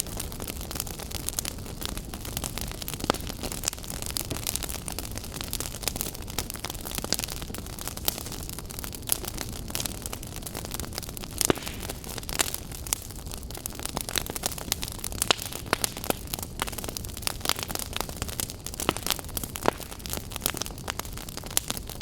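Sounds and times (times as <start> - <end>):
fire burning and crackling: 0.0 - 22.0.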